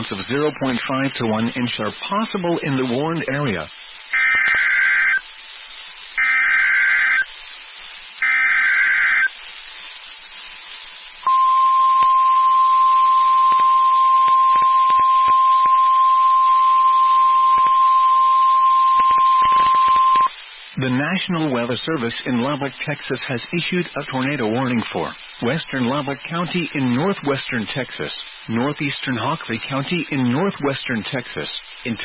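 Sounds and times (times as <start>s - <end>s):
steady alarm tone: 4.1s - 5.2s, 6.2s - 7.3s, 8.2s - 9.3s, 11.2s - 20.3s
digital header tone bursts: 11.2s - 30.1s.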